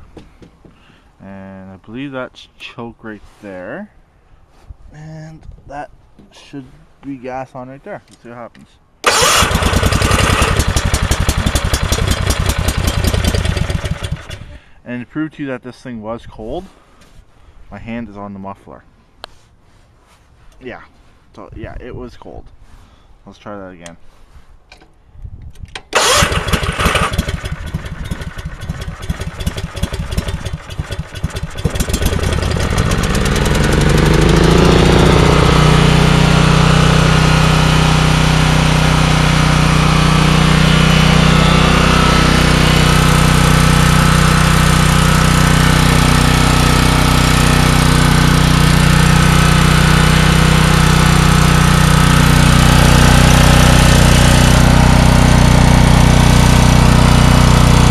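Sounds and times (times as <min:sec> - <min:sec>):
generator engine running: 0:09.0 - 0:14.6, 0:25.9 - 0:57.9
starter motor cranking: 0:09.0 - 0:14.6, 0:25.9 - 0:37.0.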